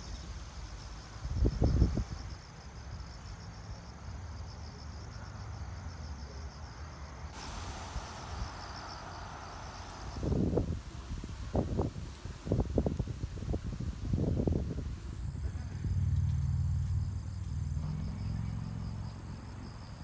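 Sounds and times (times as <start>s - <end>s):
crickets chirping: 0.0s - 20.0s
low background rumble: 14.6s - 20.0s.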